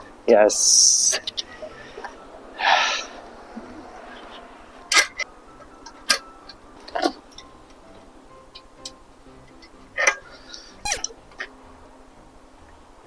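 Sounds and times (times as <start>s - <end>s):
short hiss: 10.5s - 11.2s.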